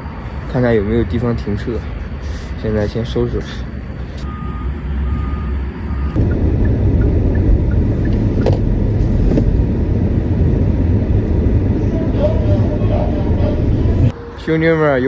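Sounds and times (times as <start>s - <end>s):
car engine and road noise: 0.0s - 15.0s
short electronic beeps: 4.2s - 6.4s
low hum: 4.3s - 15.0s.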